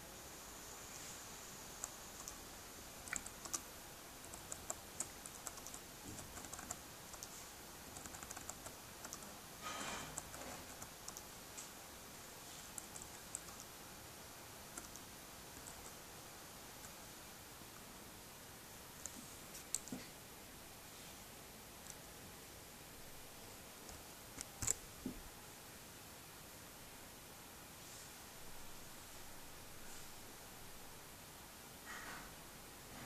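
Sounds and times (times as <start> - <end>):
laptop keyboard typing: 1.7 - 11.4, 12.6 - 13.8, 14.7 - 16.0, 19.0 - 20.0, 23.8 - 24.8.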